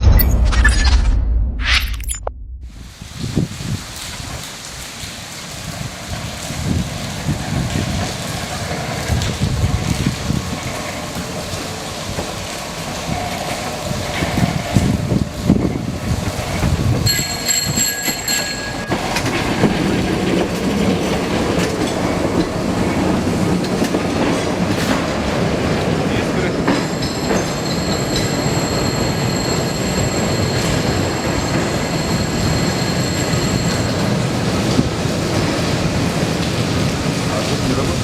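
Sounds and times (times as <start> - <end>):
tram wheels clacking over rail joints: 5.8 - 38.0
tram wheels squealing: 13.0 - 36.2.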